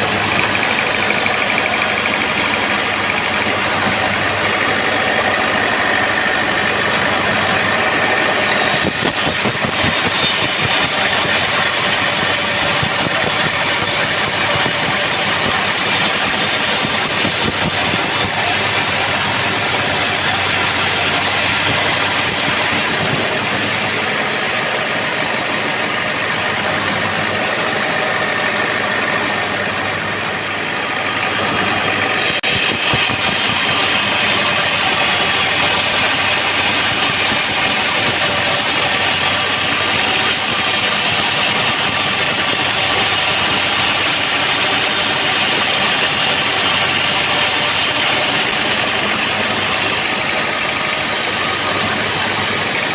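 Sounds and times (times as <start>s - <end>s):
band sawmill sawing log: 0.0s - 52.9s.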